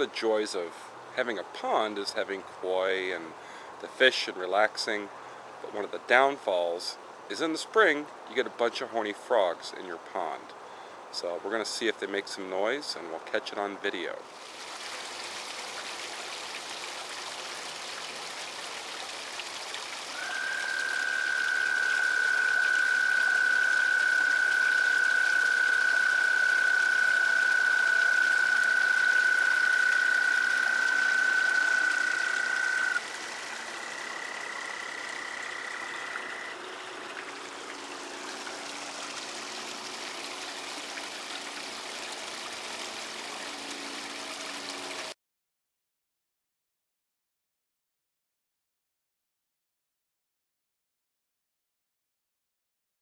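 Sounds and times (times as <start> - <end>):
pond water rushing: 0.0 - 45.2
frog trilling: 20.1 - 36.6
second higher frog trill: 20.1 - 36.6.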